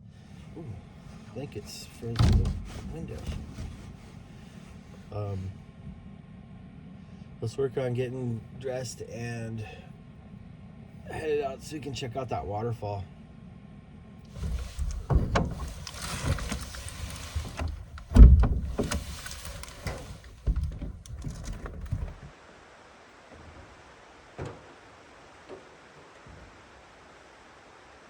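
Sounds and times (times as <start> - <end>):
knocks and bumps of moving: 1.0 - 5.1, 14.3 - 22.3
heavy thump: 2.2 - 4.1, 14.4 - 22.3
fabric rustling: 2.5 - 5.1, 14.3 - 22.3.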